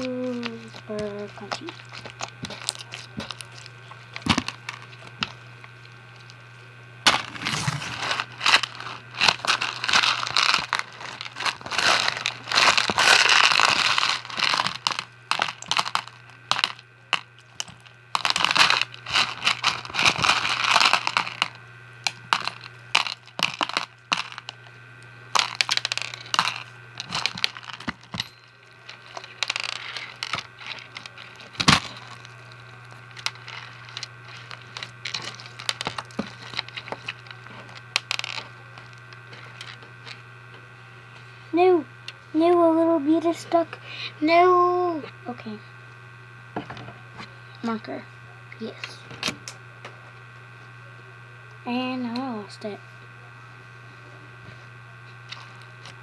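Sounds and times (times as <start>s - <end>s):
crunchy slime crackling and popping: 0.0s - 40.3s.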